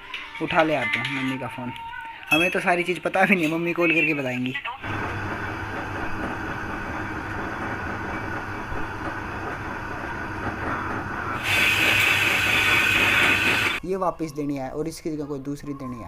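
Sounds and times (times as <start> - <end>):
soldering torch hissing: 4.8 - 13.8.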